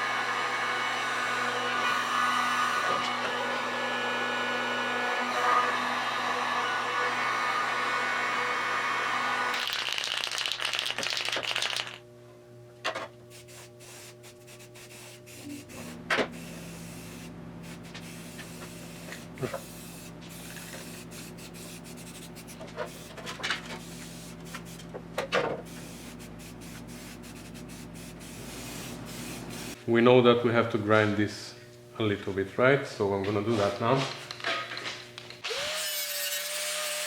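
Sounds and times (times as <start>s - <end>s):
heat gun blowing air: 0.0s - 9.8s, 13.3s - 23.2s, 23.8s - 24.8s, 25.7s - 29.8s
steady low hum: 12.0s - 35.4s.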